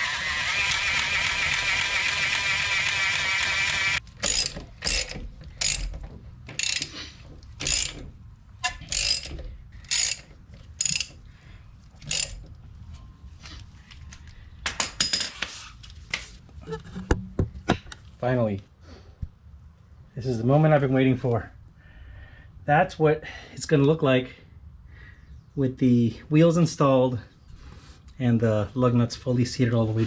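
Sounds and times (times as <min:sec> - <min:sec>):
whirring power tool: 0:00.0 - 0:05.8
hand ratchet clicking: 0:00.0 - 0:06.0, 0:06.6 - 0:07.0, 0:07.6 - 0:08.0, 0:08.6 - 0:11.2, 0:12.0 - 0:12.5.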